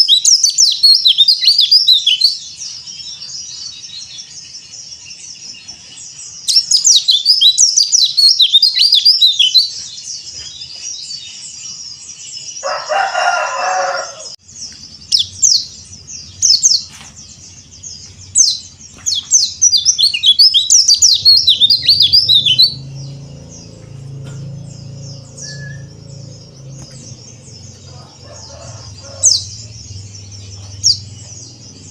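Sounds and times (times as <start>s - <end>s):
bird singing high twittering phrases: 0.0s - 31.9s
lower coarse bird call: 18.4s - 29.8s.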